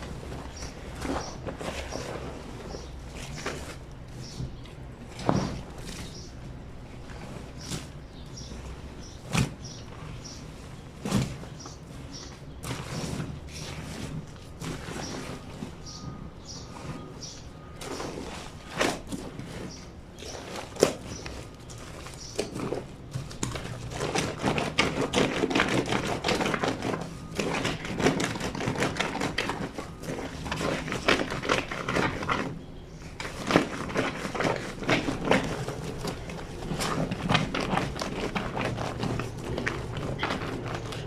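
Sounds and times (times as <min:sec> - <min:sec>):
wet blanket scrubbed on washboard: 0:23.8 - 0:32.6, 0:33.3 - 0:41.0.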